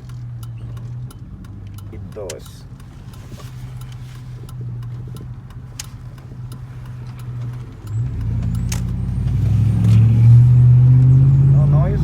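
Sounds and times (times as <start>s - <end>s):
light ticking: 0.0s - 9.1s.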